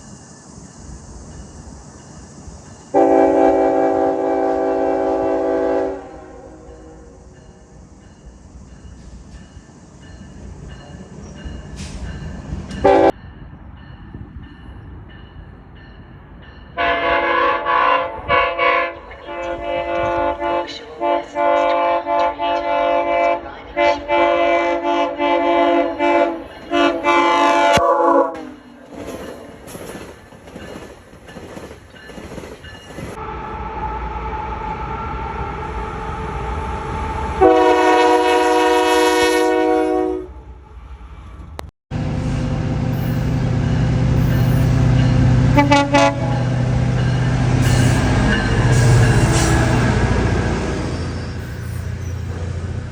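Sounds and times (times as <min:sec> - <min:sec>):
low rumble of a train: 0:00.0 - 0:52.9
locomotive air horn chord: 0:02.9 - 0:07.2, 0:12.8 - 0:13.1, 0:16.8 - 0:28.5, 0:33.2 - 0:40.4, 0:44.6 - 0:46.8.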